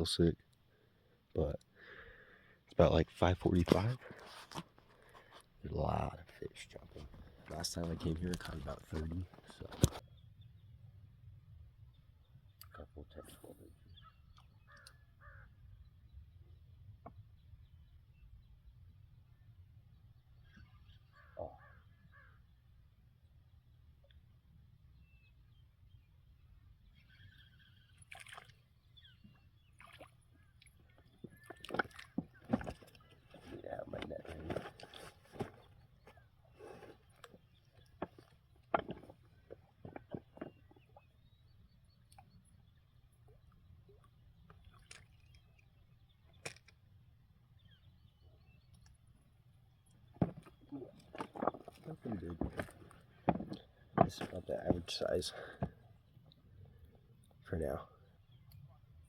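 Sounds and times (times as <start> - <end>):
small water splashes: 27.9 - 33.7, 44.0 - 46.8
water sloshing: 28.0 - 28.8, 29.7 - 41.1, 50.0 - 56.1.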